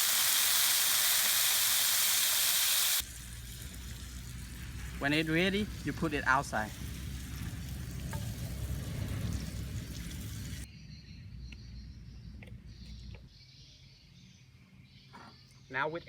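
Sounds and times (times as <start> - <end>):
food sizzling in a frying pan: 0.0 - 10.7.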